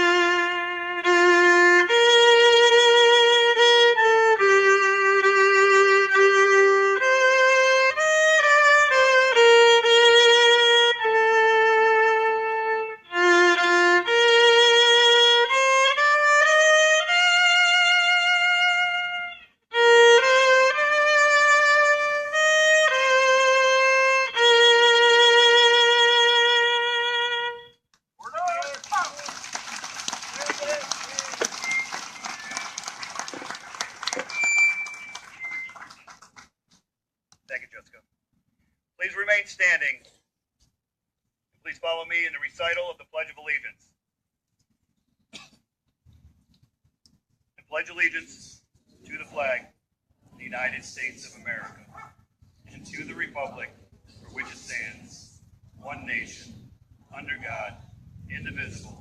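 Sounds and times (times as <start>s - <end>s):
solo violin melody: 0.0s - 27.6s.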